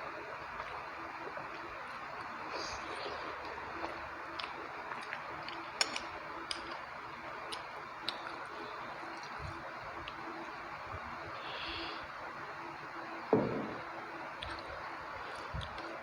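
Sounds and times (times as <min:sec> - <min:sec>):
close chewing mouth clicks: 0:01.5 - 0:10.4, 0:15.3 - 0:16.0
steady hiss: 0:08.5 - 0:16.0.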